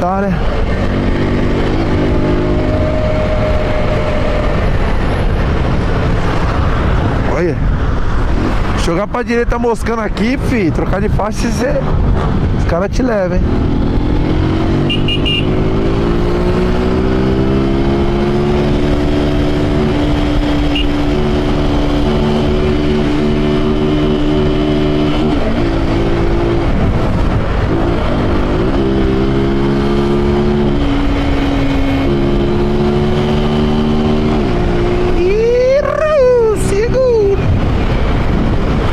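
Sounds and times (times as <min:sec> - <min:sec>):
motorcycle engine revving: 0:00.4 - 0:07.1, 0:13.3 - 0:35.9.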